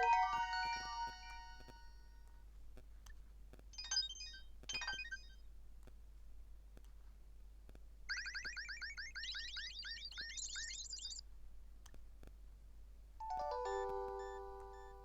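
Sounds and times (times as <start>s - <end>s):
ringtone notes forming a chord: 0.0s - 2.0s, 13.2s - 15.0s
fast falling electronic chirps: 8.1s - 11.2s.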